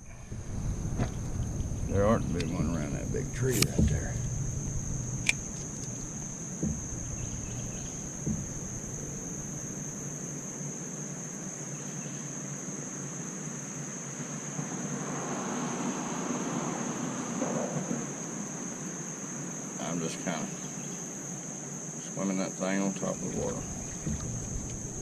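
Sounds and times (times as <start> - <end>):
insects droning: 0.0 - 25.0
soft knocks: 3.3 - 10.2, 23.3 - 25.0
sharp click: 3.5 - 4.0.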